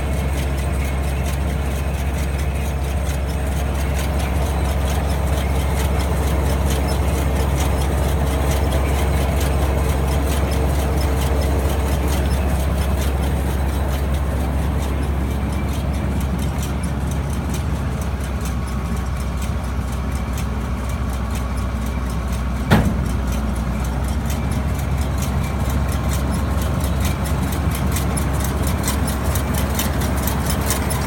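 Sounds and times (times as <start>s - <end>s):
tractor engine running: 0.0s - 31.0s.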